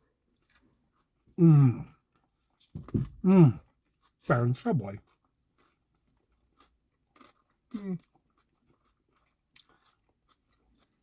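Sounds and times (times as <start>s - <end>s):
person chewing food: 0.0s - 4.2s, 4.9s - 11.0s
person humming: 1.4s - 1.8s.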